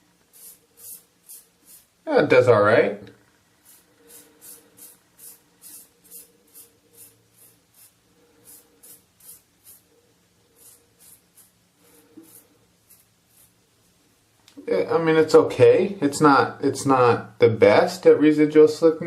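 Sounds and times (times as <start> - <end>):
razor scraping stubble: 10.6 - 13.6.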